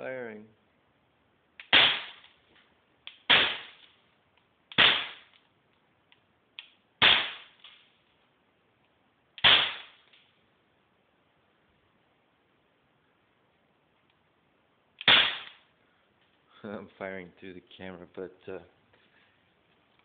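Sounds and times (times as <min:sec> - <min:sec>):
pistol shots popping: 0:01.6 - 0:02.3, 0:03.1 - 0:03.9, 0:04.7 - 0:05.4, 0:07.0 - 0:07.8, 0:09.4 - 0:10.1, 0:15.0 - 0:15.6.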